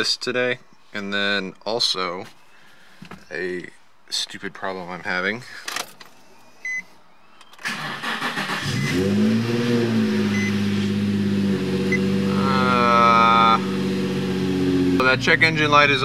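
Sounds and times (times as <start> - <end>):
car engine starting and idling: 7.6 - 16.0.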